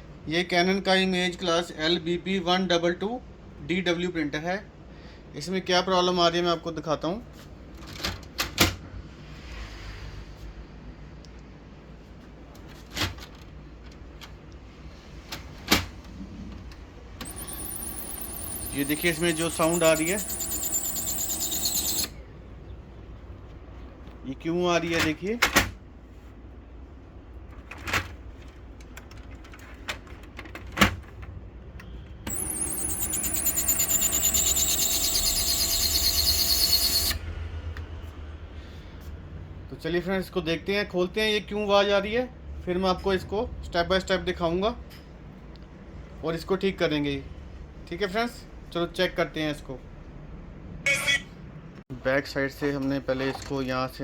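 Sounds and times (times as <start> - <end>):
laser printer humming: 17.2 - 22.1, 32.3 - 37.2.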